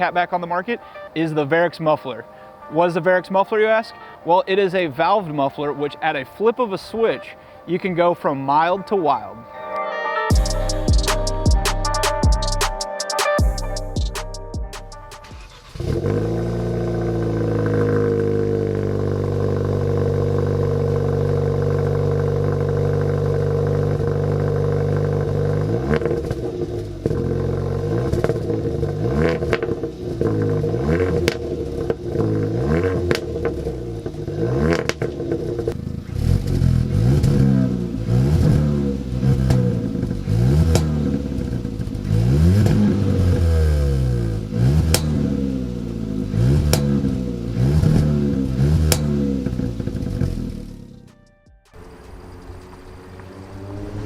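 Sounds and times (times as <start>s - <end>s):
car engine starting and revving: 13.4s - 51.2s, 51.8s - 54.0s.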